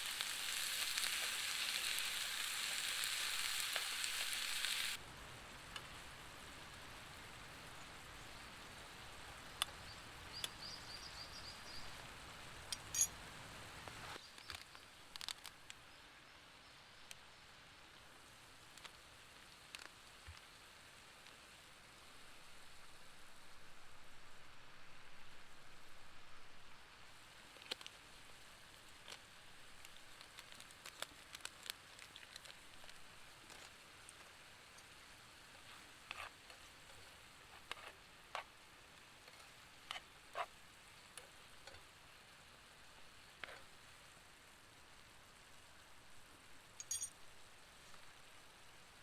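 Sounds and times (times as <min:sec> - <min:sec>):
campfire crackling and popping: 0:00.0 - 0:10.7, 0:13.8 - 0:15.8, 0:27.1 - 0:43.9
soft hiss: 0:00.0 - 0:49.0.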